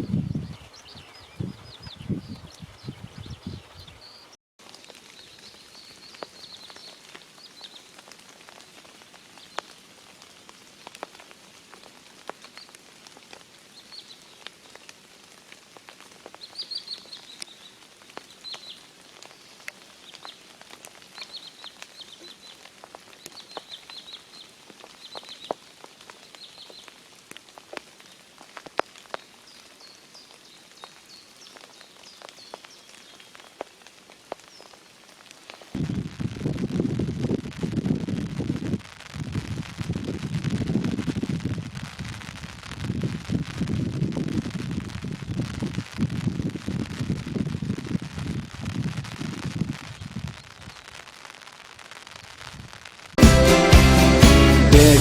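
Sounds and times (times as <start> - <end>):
songbird singing: 0.0 - 4.4, 5.1 - 8.0, 16.3 - 27.0
rain falling: 0.0 - 55.0.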